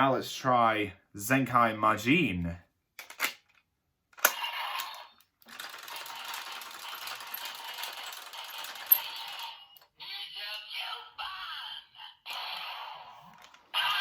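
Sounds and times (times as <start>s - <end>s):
toy rattling whir: 4.2s - 9.9s
toy electronic voice or music: 8.4s - 14.0s.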